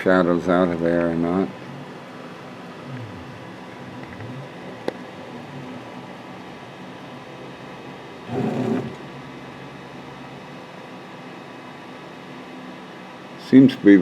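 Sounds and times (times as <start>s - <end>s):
burst of motor noise: 8.3s - 9.1s
cnc router motors humming: 8.3s - 9.3s.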